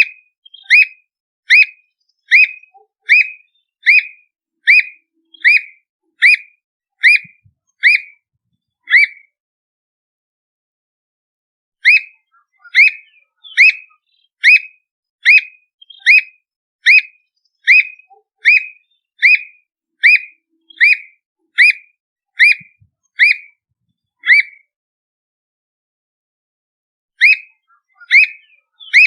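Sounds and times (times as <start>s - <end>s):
bird whistling sharp notes: 0.0s - 8.2s, 8.9s - 9.3s, 11.8s - 23.6s, 24.2s - 24.7s, 27.2s - 29.0s.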